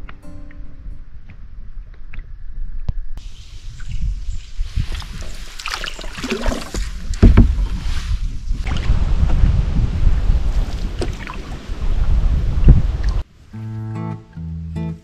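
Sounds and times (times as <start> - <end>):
wind rumbling on microphone: 0.0 - 13.3
paddle splashing water: 4.6 - 9.4, 10.4 - 11.8.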